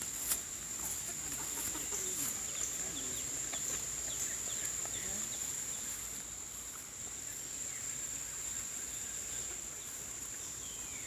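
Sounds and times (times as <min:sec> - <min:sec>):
chickens clucking: 0:00.8 - 0:06.8.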